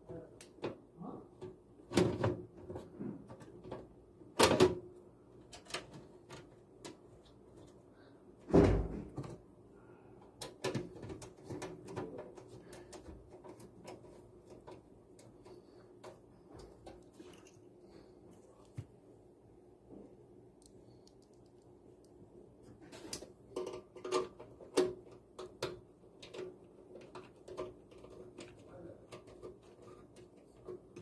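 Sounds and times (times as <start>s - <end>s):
knocks and clunks handling computer case: 0.0s - 7.2s, 8.4s - 9.5s, 10.4s - 17.0s, 22.8s - 31.0s.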